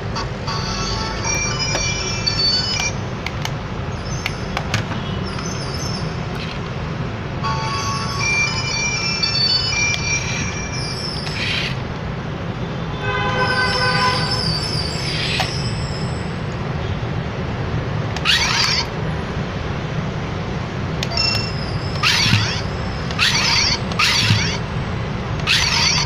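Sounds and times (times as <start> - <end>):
toy car motor hum: 10.0 - 11.8, 18.2 - 19.0, 21.1 - 24.7, 25.4 - 26.0.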